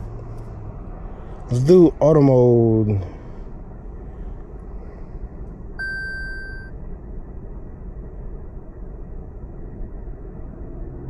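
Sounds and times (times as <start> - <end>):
low background hum: 0.0 - 11.0
electronic beep: 5.8 - 6.7.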